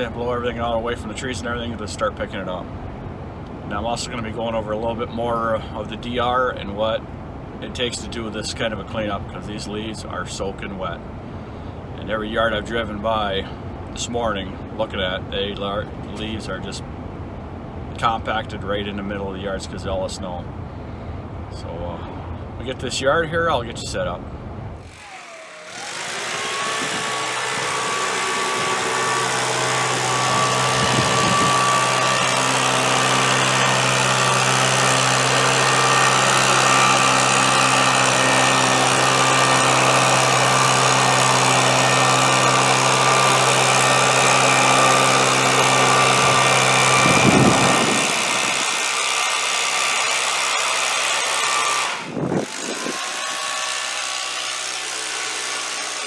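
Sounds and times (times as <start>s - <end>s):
leaf blower running: 24.8s - 56.0s.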